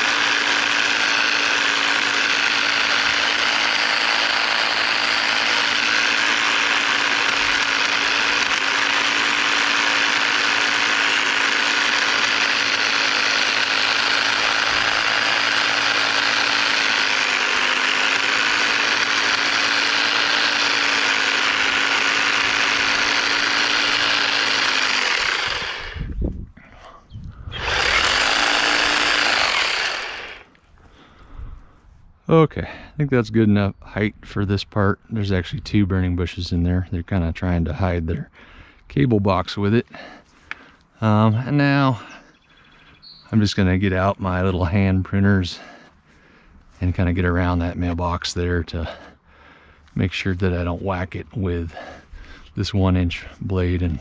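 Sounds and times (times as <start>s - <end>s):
hedge trimmer running: 0.0s - 31.1s, 45.4s - 54.0s.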